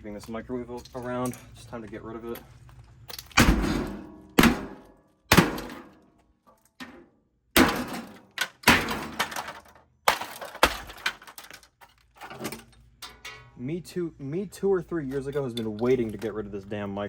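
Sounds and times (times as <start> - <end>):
broken parts clattering: 2.3 - 13.6
heavy blows smashing a microwave: 3.4 - 6.0, 7.6 - 11.5.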